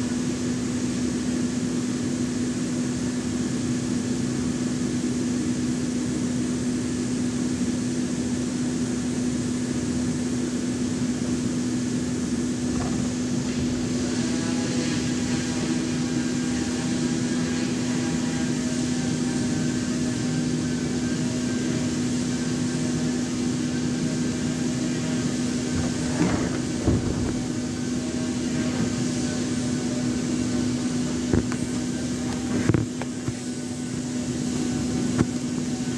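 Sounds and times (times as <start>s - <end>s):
short knocks: 12.6s - 14.0s, 25.7s - 27.8s
electric power saw running: 12.7s - 35.2s.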